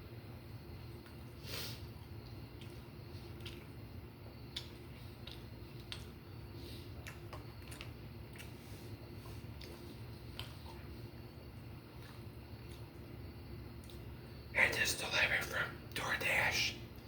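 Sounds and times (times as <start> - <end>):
chewing and wet mouth sounds: 0.6 - 16.0
sharp mouth clicks and smacks: 2.6 - 3.8, 4.5 - 6.2, 7.0 - 8.6, 13.8 - 14.1.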